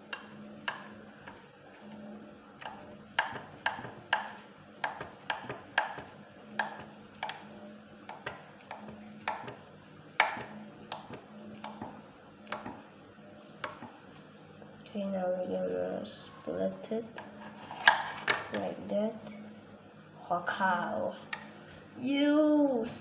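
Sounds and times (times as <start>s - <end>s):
knife tapping on cutting: 0.1s - 0.9s, 2.6s - 7.4s, 8.1s - 9.6s, 10.2s - 12.8s, 13.6s - 13.9s.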